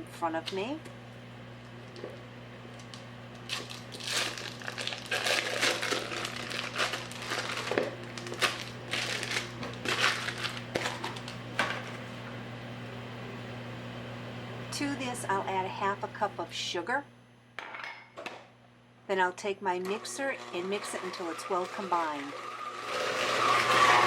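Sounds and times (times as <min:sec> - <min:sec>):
crinkly wrapper crackling: 0:02.8 - 0:12.0.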